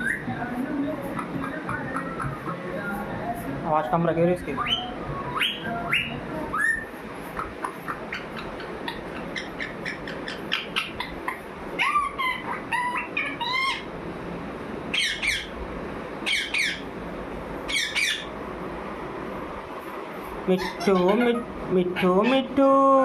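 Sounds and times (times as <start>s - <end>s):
parrot squawking: 0.0s - 0.3s, 4.5s - 13.9s, 14.9s - 15.6s, 16.2s - 16.9s, 17.7s - 18.3s, 20.5s - 22.8s.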